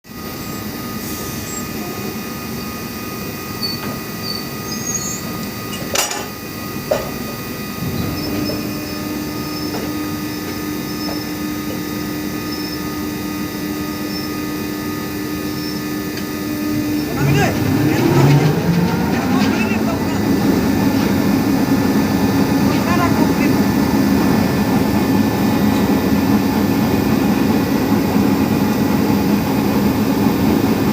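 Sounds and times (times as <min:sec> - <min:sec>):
drilling rig machinery running: 0:00.1 - 0:30.9
low whine: 0:05.3 - 0:28.9.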